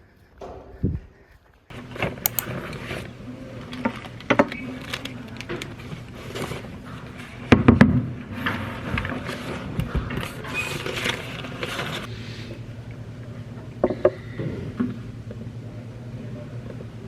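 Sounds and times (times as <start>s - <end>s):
utensils and dishes clicking: 2.3s - 2.5s.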